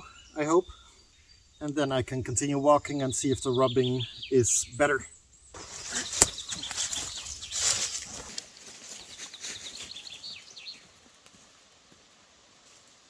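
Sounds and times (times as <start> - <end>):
faint bird chirps: 0.0 - 8.2
rustling and handling noise: 5.6 - 10.0.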